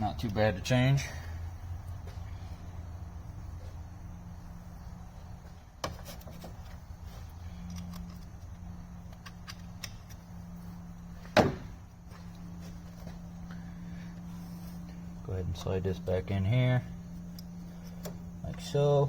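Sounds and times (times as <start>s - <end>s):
steady low hum: 0.0s - 19.0s
clicks and clatter of parts and tools: 7.6s - 10.2s
loud clunk: 11.3s - 11.8s.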